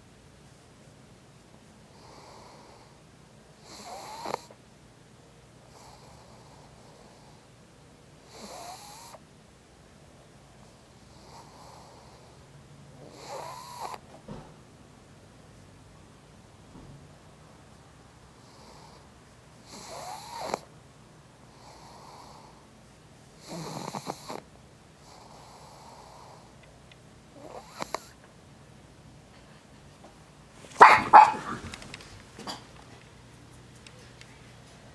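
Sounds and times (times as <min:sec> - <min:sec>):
dog snoring: 0:01.9 - 0:03.0, 0:03.6 - 0:04.6, 0:05.7 - 0:07.5, 0:08.2 - 0:09.2, 0:11.0 - 0:12.4, 0:13.0 - 0:14.0, 0:18.4 - 0:20.7, 0:21.5 - 0:22.6, 0:23.4 - 0:26.6, 0:27.4 - 0:28.2.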